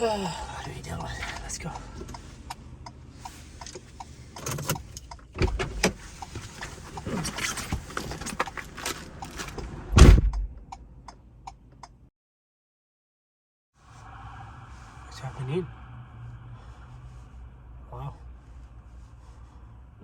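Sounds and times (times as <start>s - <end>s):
heavy thump: 9.9s - 10.6s.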